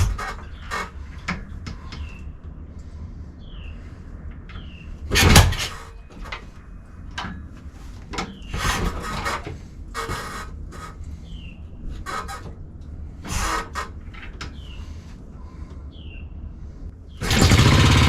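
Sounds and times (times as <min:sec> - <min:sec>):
engine kickstart clunks: 0:04.6 - 0:05.8, 0:17.2 - 0:18.0
short falling squeaks: 0:11.9 - 0:12.6.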